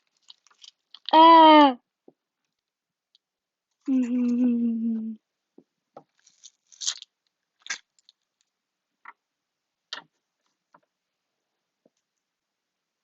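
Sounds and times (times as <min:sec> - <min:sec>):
tape crinkles and clicks: 0:00.0 - 0:01.2, 0:06.1 - 0:08.5.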